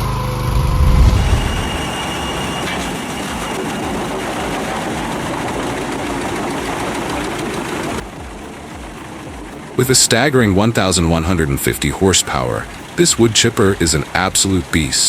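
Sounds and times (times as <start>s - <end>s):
dense mechanical clatter: 0.0s - 15.0s
heavy machine engine: 0.0s - 15.0s.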